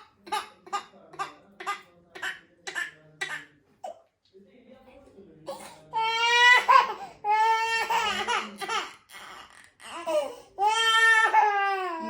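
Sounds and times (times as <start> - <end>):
baby crying: 5.9 - 12.0.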